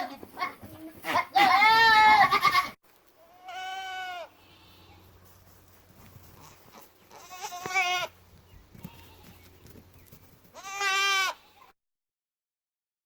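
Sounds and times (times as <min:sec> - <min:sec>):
goat bleating: 0:00.0 - 0:05.1, 0:06.3 - 0:08.2, 0:08.8 - 0:09.5, 0:10.5 - 0:11.7.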